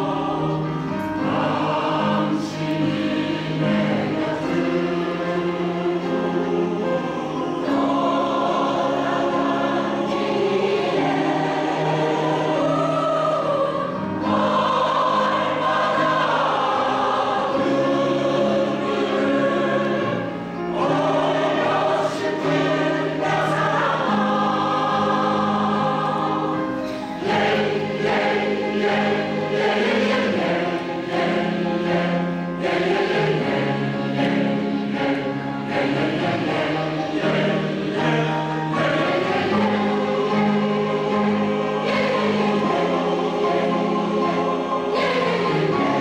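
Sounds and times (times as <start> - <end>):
women's choir singing: 0.0 - 46.0
singers breathing: 26.8 - 27.2.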